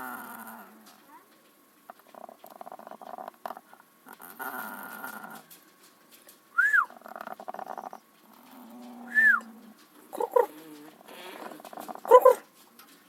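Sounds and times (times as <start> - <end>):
hen snoring: 2.1 - 5.4, 6.9 - 12.1.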